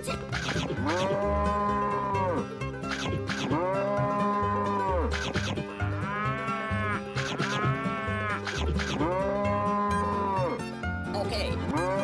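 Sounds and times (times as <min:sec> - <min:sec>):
background music with bass line: 0:00.0 - 0:12.0
cow mooing: 0:00.8 - 0:02.4, 0:03.5 - 0:05.1, 0:05.7 - 0:08.4, 0:09.0 - 0:10.6.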